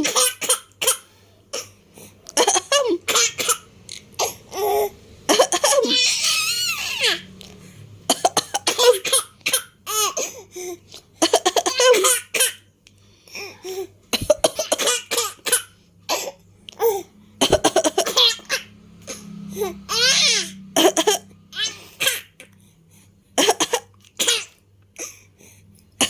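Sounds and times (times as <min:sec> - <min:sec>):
person coughing: 0:08.1 - 0:09.7, 0:17.4 - 0:18.2
baby laughing: 0:16.8 - 0:18.7, 0:19.6 - 0:22.4.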